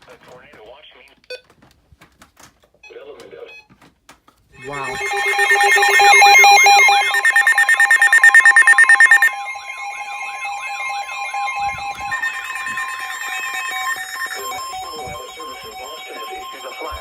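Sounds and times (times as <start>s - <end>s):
steady alert tones: 4.6s - 14.8s
warbling siren-like sweeps: 4.6s - 15.4s
fast pulsing beep: 4.6s - 16.2s.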